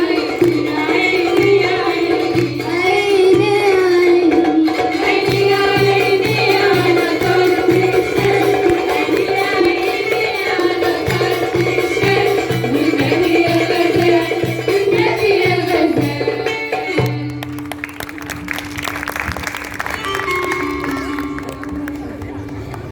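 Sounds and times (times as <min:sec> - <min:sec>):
plucked lyre melody: 0:19.8 - 0:22.6.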